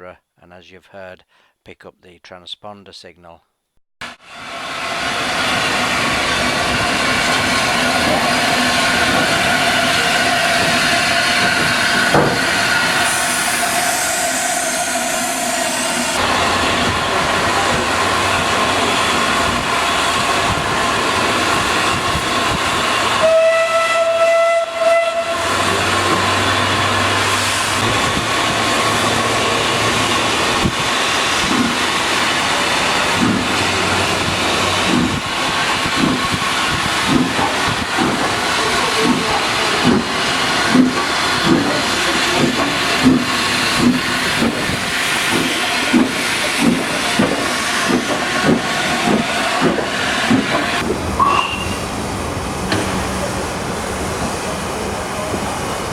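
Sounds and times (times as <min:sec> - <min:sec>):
train pulling away: 0:04.1 - 0:55.9
steam hissing: 0:04.3 - 0:23.6, 0:25.3 - 0:55.9
train whistle: 0:23.2 - 0:26.8, 0:51.2 - 0:51.8.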